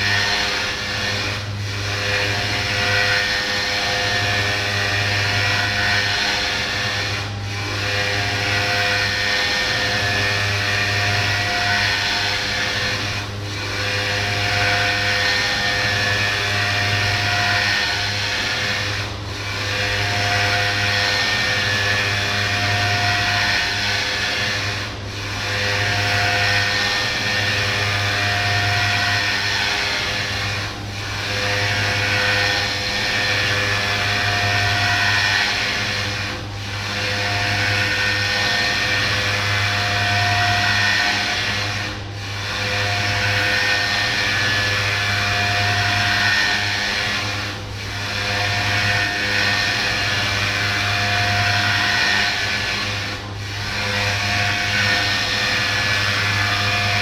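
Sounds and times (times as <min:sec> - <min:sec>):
machine hum: 0:00.0 - 0:57.0
milling machine spindle cutting: 0:42.4 - 0:57.0.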